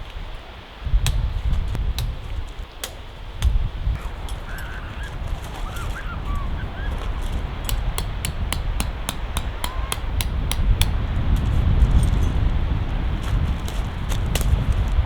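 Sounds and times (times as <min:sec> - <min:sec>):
wind rumbling on microphone: 0:00.0 - 0:15.0
chirping bird calls: 0:03.8 - 0:10.5.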